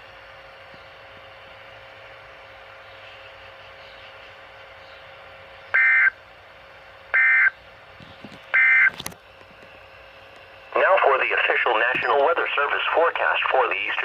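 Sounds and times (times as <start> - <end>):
faint radio hiss: 10.8 - 14.0.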